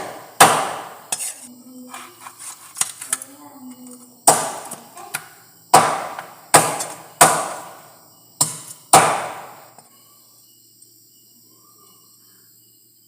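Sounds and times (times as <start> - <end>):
knife chopping on a chopping board: 0.0 - 1.3, 4.2 - 7.7, 8.4 - 9.6.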